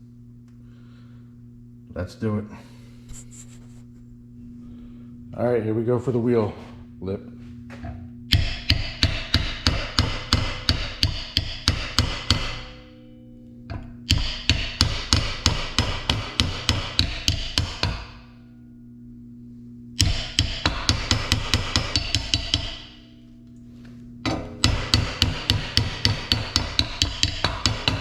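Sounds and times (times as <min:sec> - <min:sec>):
hammer tapping sheet steel: 0:08.3 - 0:13.1, 0:14.0 - 0:18.2, 0:20.0 - 0:23.1, 0:24.2 - 0:28.0.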